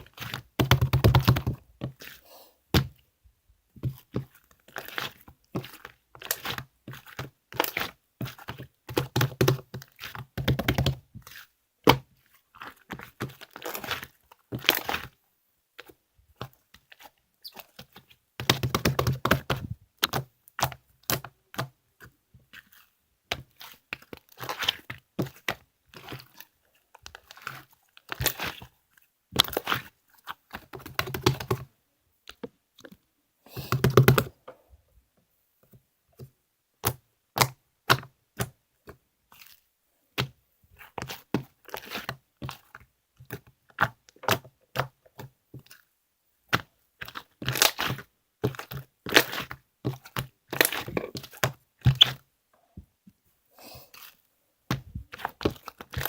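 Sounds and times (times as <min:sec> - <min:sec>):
crinkling and crunching clicks: 0:53.9 - 0:56.0.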